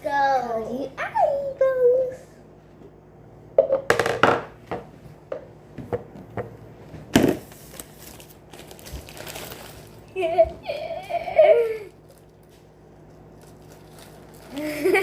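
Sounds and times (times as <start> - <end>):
packaging crinkling and rustling: 7.4 - 10.1, 11.9 - 15.0.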